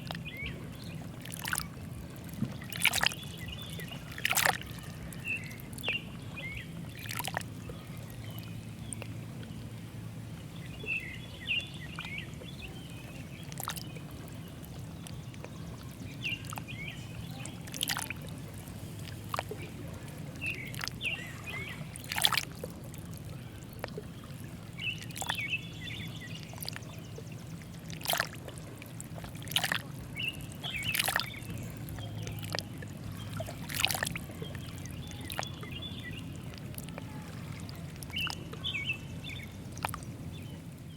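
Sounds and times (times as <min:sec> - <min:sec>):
lake water lapping: 0:00.0 - 0:40.9
steady low rumble: 0:00.0 - 0:40.9.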